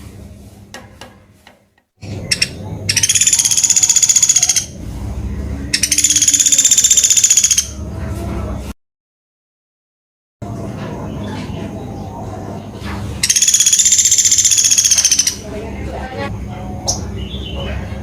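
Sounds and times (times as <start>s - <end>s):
woodpecker rattling trills: 2.2s - 4.8s, 5.8s - 7.7s, 13.2s - 15.4s.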